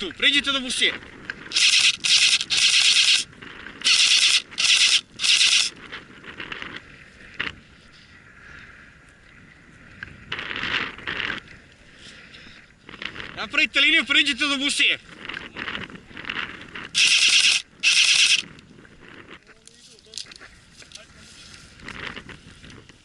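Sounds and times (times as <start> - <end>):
rustling against microphone: 1.0 - 8.2, 9.8 - 13.4, 15.0 - 23.0
sharp click: 1.5 - 3.3, 3.9 - 5.7, 17.0 - 18.5.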